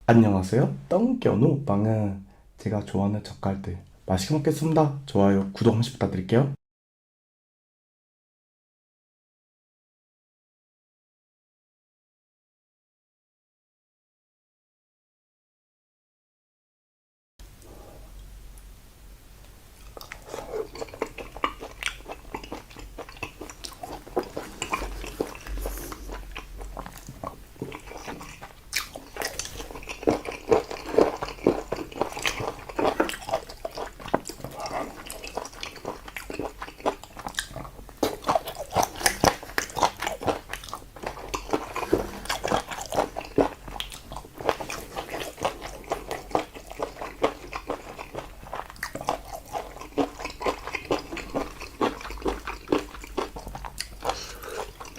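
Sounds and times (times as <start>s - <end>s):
person chewing with wet smacks: 19.4s - 54.9s.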